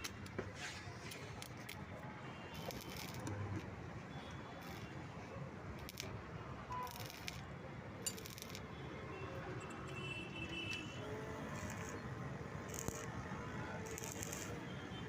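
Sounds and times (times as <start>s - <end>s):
welding hiss bursts: 2.6s - 3.3s, 6.8s - 7.4s, 11.4s - 13.2s, 13.8s - 14.6s.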